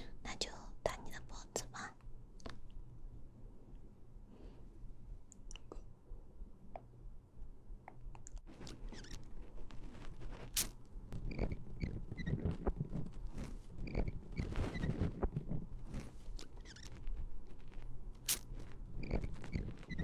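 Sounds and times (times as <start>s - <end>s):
short squeaky chirps: 8.6s - 9.4s, 10.5s - 17.1s, 18.3s - 20.0s.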